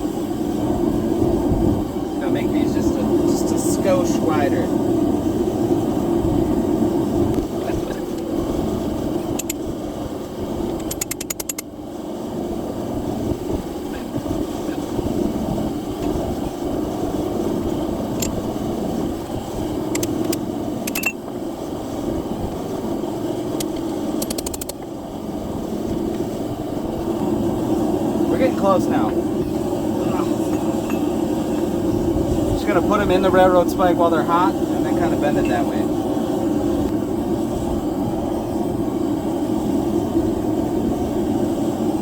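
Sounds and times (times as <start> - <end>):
forge roaring: 0.0 - 10.9, 11.6 - 42.0
sharp clicks: 9.3 - 9.6, 10.7 - 11.7, 19.9 - 21.2, 23.6 - 24.9.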